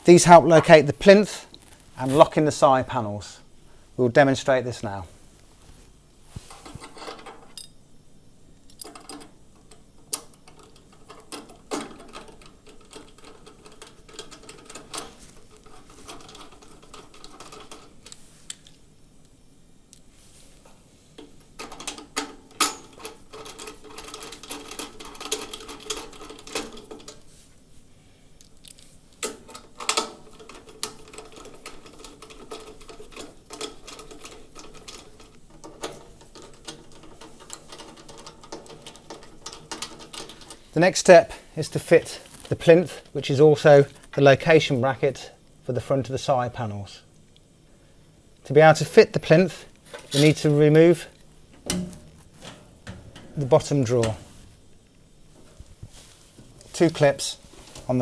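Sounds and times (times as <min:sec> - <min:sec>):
metal brackets clicking and knocking: 0:08.7 - 0:18.1, 0:21.2 - 0:27.2, 0:29.2 - 0:40.7, 0:49.2 - 0:54.4
steady hum: 0:30.2 - 0:58.0.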